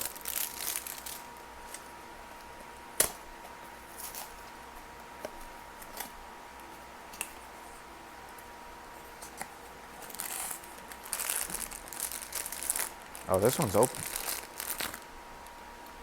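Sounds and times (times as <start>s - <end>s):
plastic wrapping crinkling: 0.0s - 1.9s, 10.0s - 16.0s.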